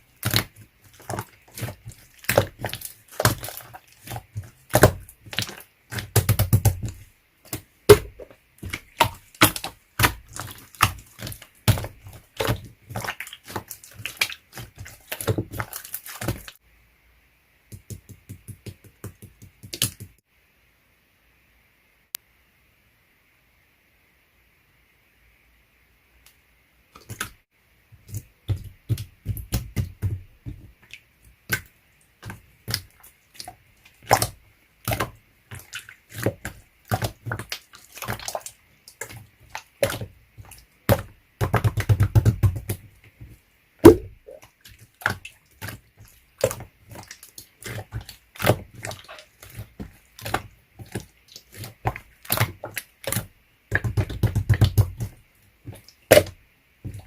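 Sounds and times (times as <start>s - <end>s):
slime squishing and popping: 0.2s - 16.5s, 43.8s - 45.8s, 56.0s - 57.0s.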